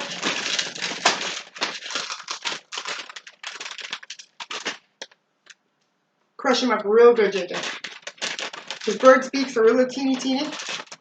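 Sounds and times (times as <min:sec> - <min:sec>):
chips being crushed: 0:00.0 - 0:05.1, 0:07.4 - 0:11.0.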